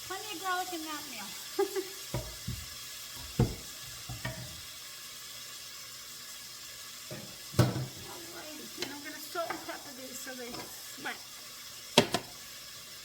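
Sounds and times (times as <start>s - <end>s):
onions sizzling in a frying pan: 0.0s - 13.0s
utensil knocking on pan: 2.1s - 4.6s, 7.1s - 8.0s, 12.0s - 12.3s.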